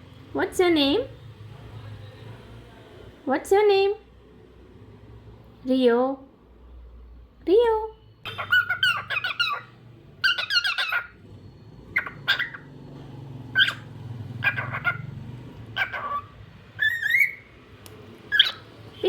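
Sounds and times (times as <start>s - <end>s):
cockatiel chirping: 8.3s - 11.2s, 11.9s - 12.7s, 13.5s - 15.1s, 15.7s - 17.5s, 18.3s - 18.7s.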